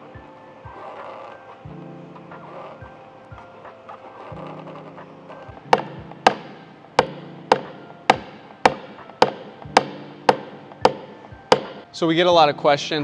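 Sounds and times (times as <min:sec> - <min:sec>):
faint background music: 0:00.0 - 0:13.0
hammer tapping metal panel: 0:05.8 - 0:11.9.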